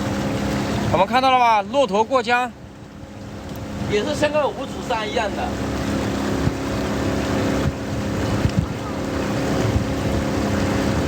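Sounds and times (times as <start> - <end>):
small boat engine running: 0.0 - 11.0
wind noise: 5.6 - 11.0.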